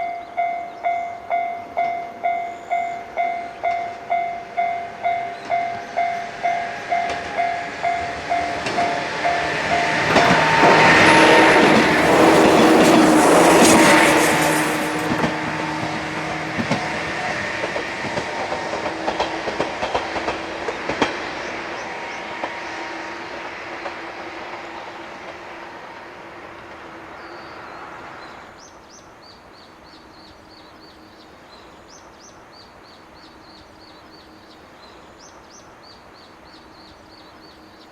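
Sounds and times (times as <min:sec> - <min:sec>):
level-crossing warning bell dinging: 0:00.0 - 0:17.9
electric train passing: 0:00.0 - 0:29.0
train wheels clicking over rail joints: 0:06.7 - 0:26.8.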